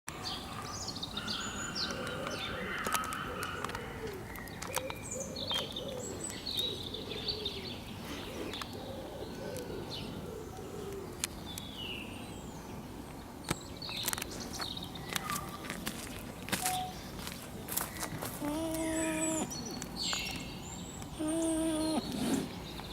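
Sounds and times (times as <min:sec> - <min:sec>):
birds chirping: 0:00.2 - 0:22.9
goat whining: 0:18.4 - 0:19.5, 0:21.2 - 0:22.6.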